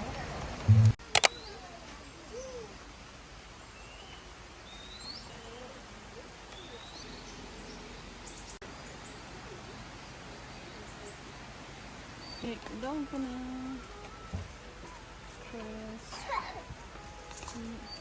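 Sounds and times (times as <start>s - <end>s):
steady low hiss: 0.0s - 18.0s
patter of clicks: 17.2s - 18.0s.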